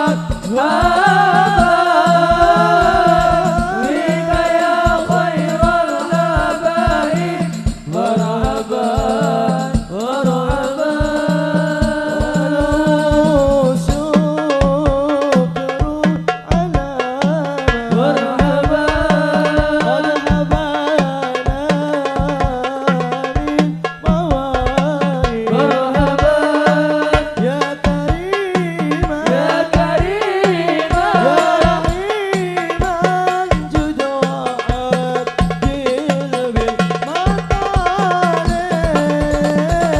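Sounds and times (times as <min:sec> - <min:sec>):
frame drums and darbuka beat: 0:00.0 - 0:39.9
person singing: 0:00.0 - 0:39.9.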